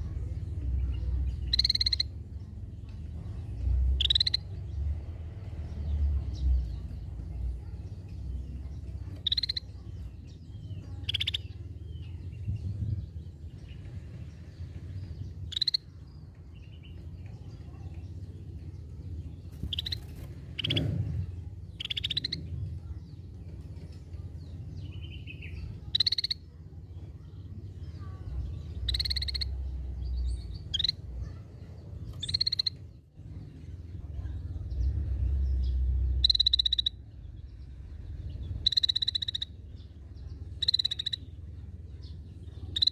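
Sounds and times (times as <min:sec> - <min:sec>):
low background rumble: 0:00.0 - 0:42.9
bird harsh call notes: 0:28.9 - 0:29.5, 0:38.6 - 0:39.6.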